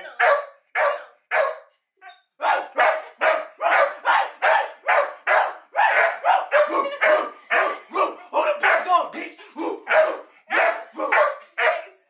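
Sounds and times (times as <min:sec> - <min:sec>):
dog barking: 0:00.1 - 0:01.7, 0:02.4 - 0:08.9, 0:09.9 - 0:12.0.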